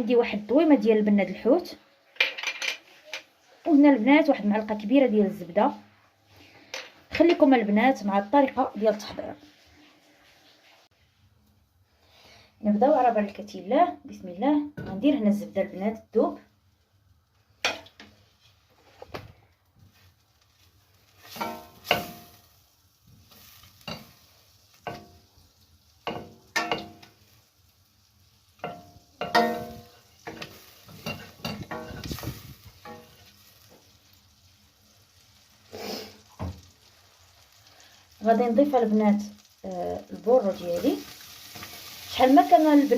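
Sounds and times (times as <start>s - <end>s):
butter sizzling in a pot: 0.0s - 13.9s, 14.7s - 42.9s
spoon knocking and scraping a pot: 26.0s - 27.2s, 28.6s - 33.3s.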